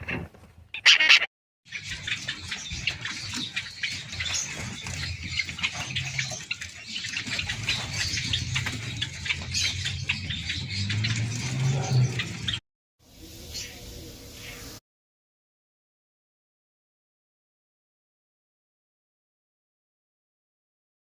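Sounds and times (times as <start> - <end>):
small birds chirping: 0.8 - 14.8.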